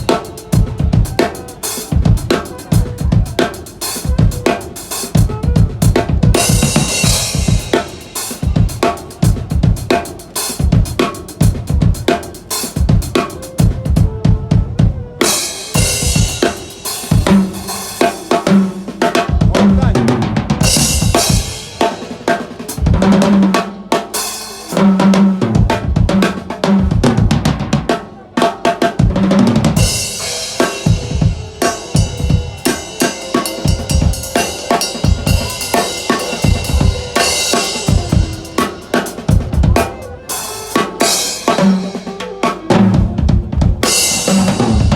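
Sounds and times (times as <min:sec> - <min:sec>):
kick and snare drums: 0:15.7 - 0:21.9
cymbal crashes: 0:29.8 - 0:42.9.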